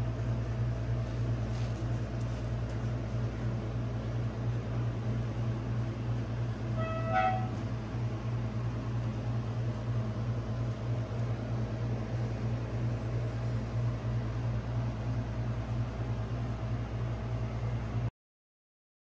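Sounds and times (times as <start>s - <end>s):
steady low hum: 0.0s - 18.1s
short horn toot: 6.8s - 7.6s.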